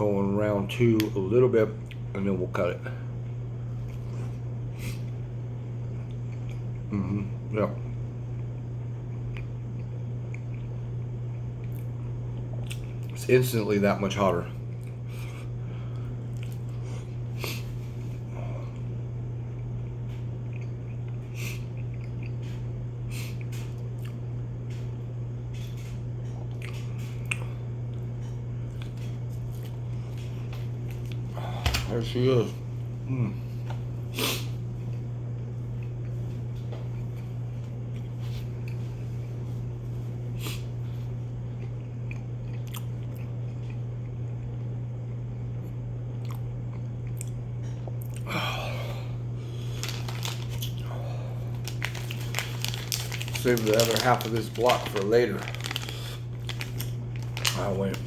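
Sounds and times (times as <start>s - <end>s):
steady low hum: 0.0s - 58.0s
person chewing: 9.1s - 10.8s, 11.4s - 13.2s, 14.7s - 17.7s, 20.4s - 22.7s, 26.3s - 28.1s, 41.6s - 43.8s, 46.1s - 48.3s, 49.4s - 58.0s.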